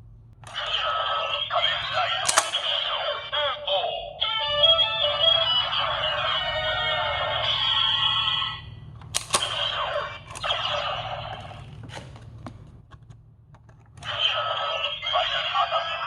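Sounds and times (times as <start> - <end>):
electronic toy sound effects: 0.5 - 8.7, 9.4 - 11.7, 14.0 - 16.0
plastic mechanism clicks: 2.2 - 2.6.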